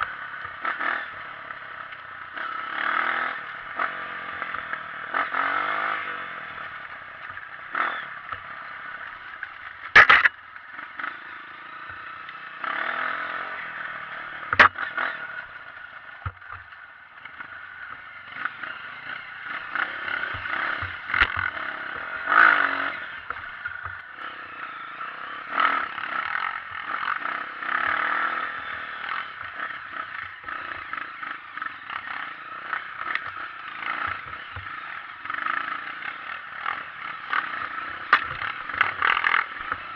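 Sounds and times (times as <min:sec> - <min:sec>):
trail bike engine running: 0:00.0 - 0:39.9.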